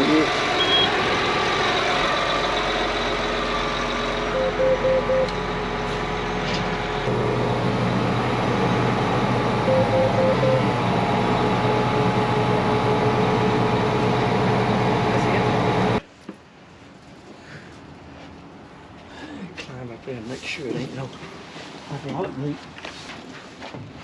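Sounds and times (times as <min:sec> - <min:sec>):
deep hum: 0:00.0 - 0:16.0
tractor engine running: 0:00.0 - 0:16.0
warning alarm beeps: 0:00.6 - 0:01.0, 0:04.3 - 0:05.3, 0:09.6 - 0:10.7.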